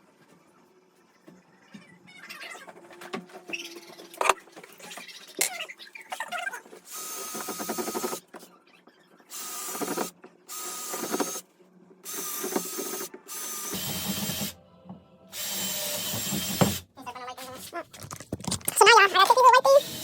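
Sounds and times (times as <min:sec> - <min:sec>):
power drill running in bursts: 0:06.9 - 0:08.2, 0:09.3 - 0:11.4, 0:12.1 - 0:14.5, 0:15.4 - 0:16.8, 0:19.8 - 0:20.0.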